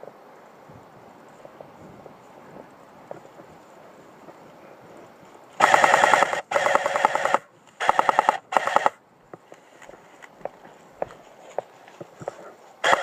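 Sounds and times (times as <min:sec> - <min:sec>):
airsoft gun firing full auto: 0:05.6 - 0:09.0.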